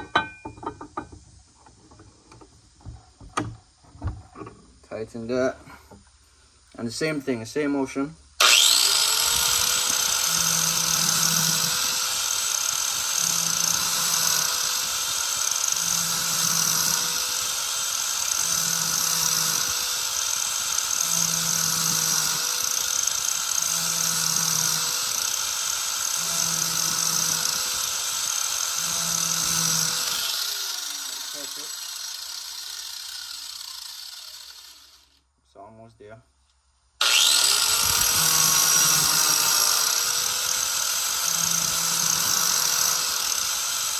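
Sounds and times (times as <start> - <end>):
angle grinder grinding steel: 8.4 - 35.2, 37.0 - 43.9.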